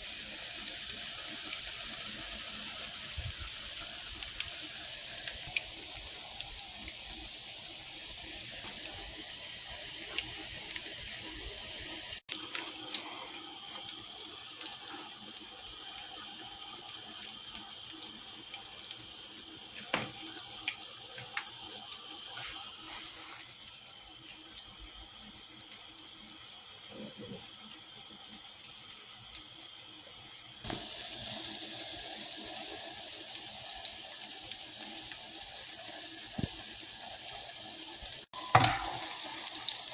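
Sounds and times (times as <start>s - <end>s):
tap running into sink: 19.8s - 20.4s, 30.7s - 31.0s, 38.4s - 39.9s
knocks and clinks: 38.4s - 39.8s.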